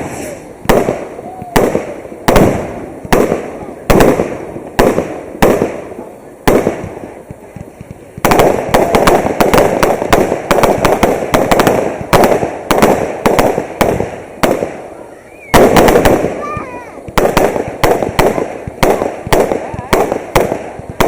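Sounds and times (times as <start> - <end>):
firework bursts: 0.0 - 21.0
rapid firework barrage: 0.0 - 21.0.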